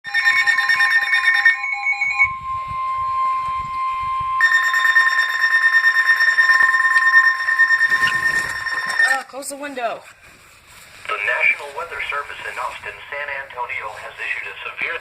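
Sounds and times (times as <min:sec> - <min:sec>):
steady warning alarm tone: 0:00.0 - 0:09.3
rapidly pulsing electronic beep: 0:00.1 - 0:09.2.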